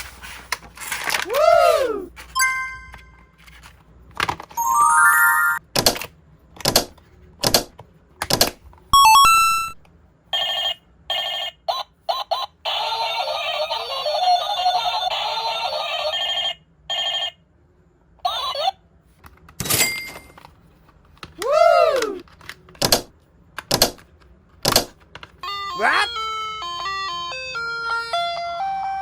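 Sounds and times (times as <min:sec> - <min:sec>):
electronic beeps: 0:04.6 - 0:05.6
electronic ringing: 0:04.6 - 0:05.6.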